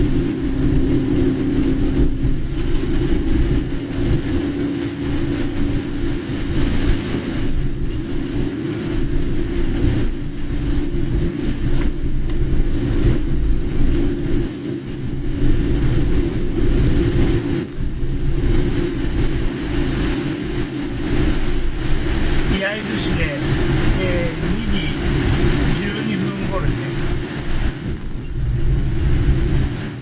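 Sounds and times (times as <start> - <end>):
car engine and road hum: 0.0 - 30.0
rain hissing: 0.0 - 30.0.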